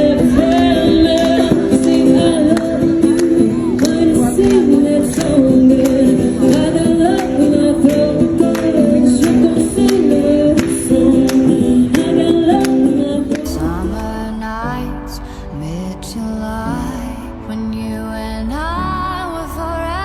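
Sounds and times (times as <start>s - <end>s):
voices singing over a beat: 0.0s - 15.2s.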